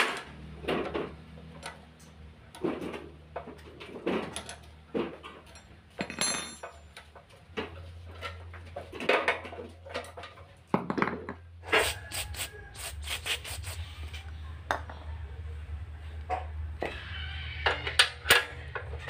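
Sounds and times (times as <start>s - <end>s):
metal tools clinking on workbench: 5.2s - 7.1s.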